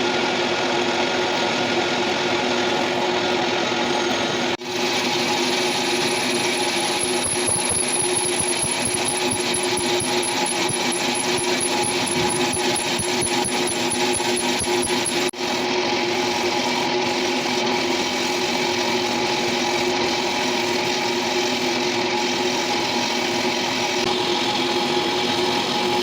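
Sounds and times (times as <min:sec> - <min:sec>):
metalworking machine humming: 0:01.0 - 0:26.0
faint high whine: 0:04.9 - 0:15.3.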